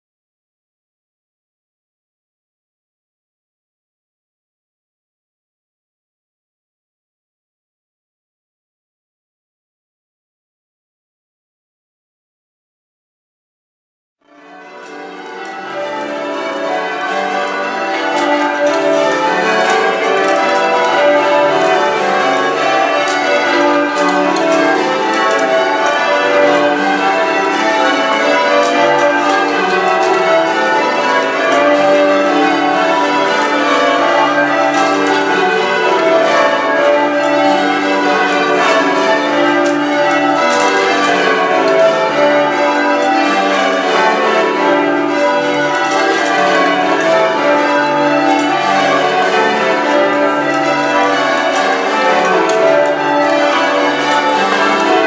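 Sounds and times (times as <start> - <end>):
church bells change ringing: 14.2 - 55.0.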